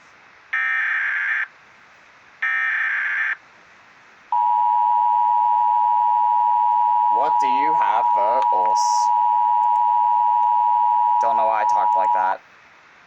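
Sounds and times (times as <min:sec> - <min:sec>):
steady two-tone attention signal: 0:04.4 - 0:12.4.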